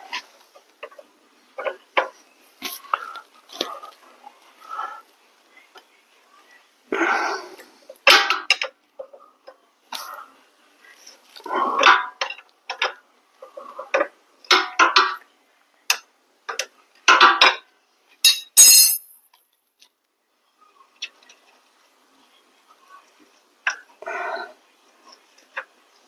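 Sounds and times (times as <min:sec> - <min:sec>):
metallic tool clicks and clinks: 0:18.3 - 0:19.2
sharp ringing clink: 0:18.3 - 0:19.2.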